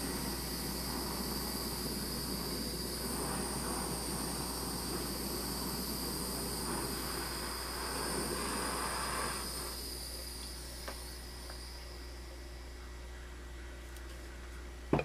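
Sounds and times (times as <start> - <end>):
hand torch hissing: 0.0 - 12.0.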